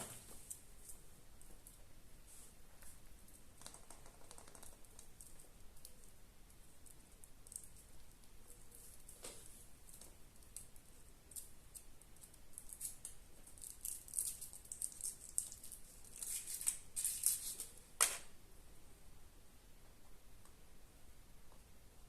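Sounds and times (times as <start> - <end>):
crackling foil: 3.6 - 17.8.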